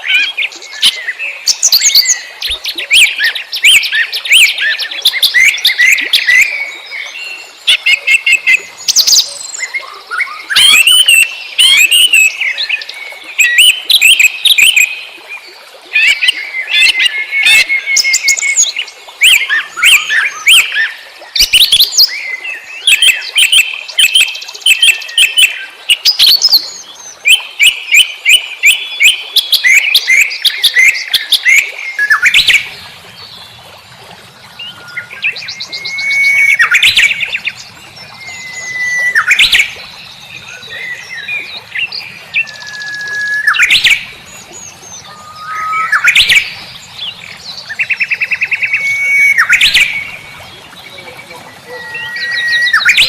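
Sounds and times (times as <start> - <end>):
songbirds chirping and singing: 34.6 - 53.0.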